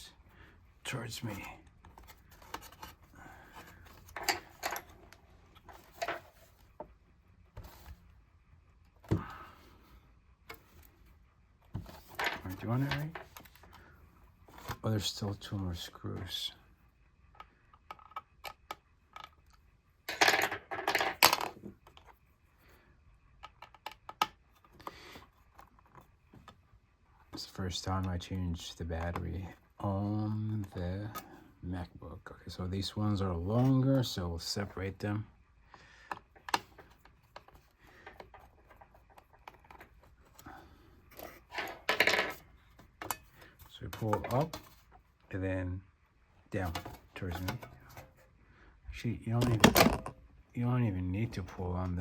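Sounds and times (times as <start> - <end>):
small metal parts clattering: 3.5 - 5.0, 20.1 - 21.6, 41.1 - 42.4.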